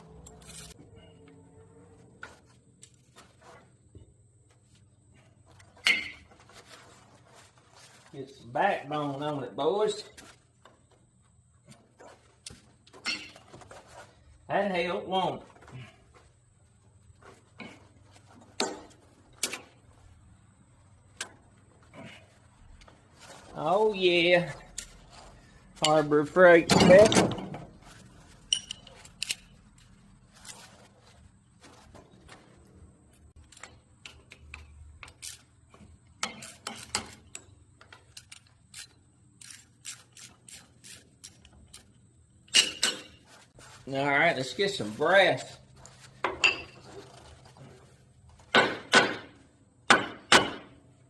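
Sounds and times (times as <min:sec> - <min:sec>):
hand tools clicking and clinking: 0:00.0 - 0:00.8, 0:12.4 - 0:13.6, 0:28.2 - 0:30.8, 0:36.2 - 0:43.3
metal clinks and knocks: 0:00.0 - 0:01.1, 0:05.5 - 0:06.5, 0:12.8 - 0:14.0, 0:24.8 - 0:30.9, 0:45.8 - 0:49.4.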